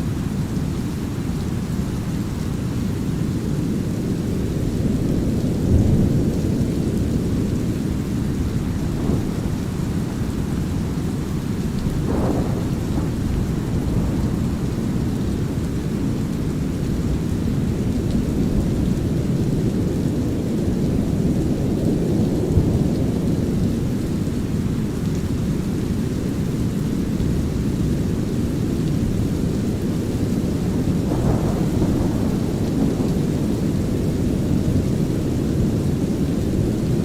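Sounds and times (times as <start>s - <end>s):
light rain drizzle: 0.0s - 37.0s
rolling thunder: 5.0s - 23.5s, 29.1s - 37.0s.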